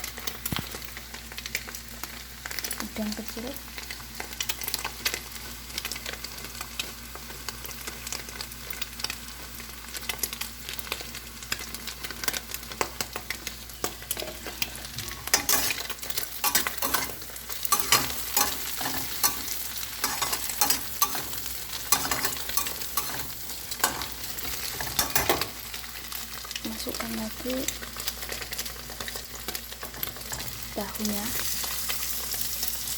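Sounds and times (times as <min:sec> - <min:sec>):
food sizzling in oil: 0:00.0 - 0:32.9
utensil scraping and knocking pot: 0:14.1 - 0:25.6.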